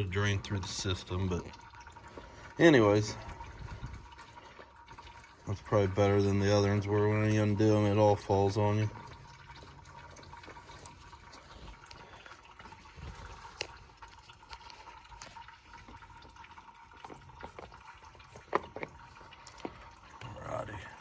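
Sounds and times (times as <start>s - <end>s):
oil trickling into a bucket: 0.0s - 21.0s.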